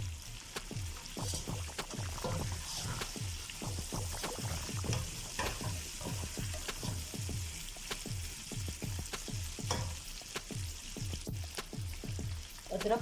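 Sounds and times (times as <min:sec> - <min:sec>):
meat sizzling in oil: 0:00.0 - 0:13.0
spoon stirring in a pot: 0:00.8 - 0:08.1, 0:09.0 - 0:10.4.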